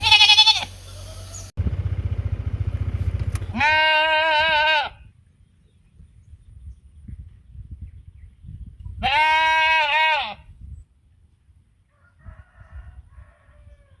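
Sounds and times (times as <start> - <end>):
sheep bleating: 0.0 - 1.4, 3.5 - 5.0, 9.0 - 10.4.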